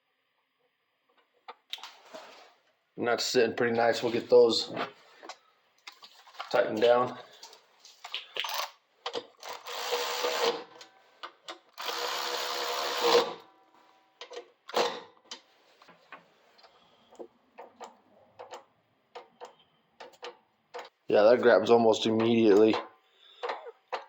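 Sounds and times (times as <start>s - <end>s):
tools and parts clicking: 14.2s - 15.5s, 16.6s - 21.0s.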